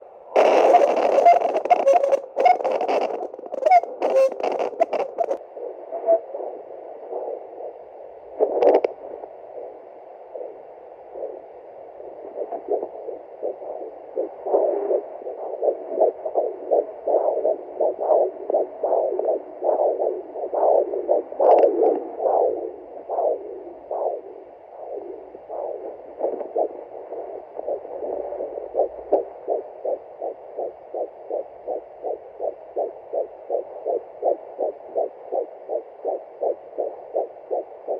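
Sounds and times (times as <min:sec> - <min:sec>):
probe scraping: 0:00.4 - 0:05.4
rapid fetal heartbeat pulse: 0:00.4 - 0:37.9.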